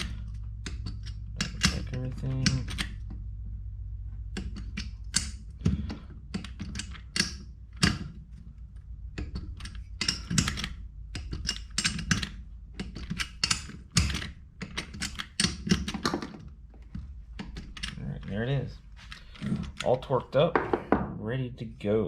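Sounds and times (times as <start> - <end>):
low hum: 0.0 - 15.0.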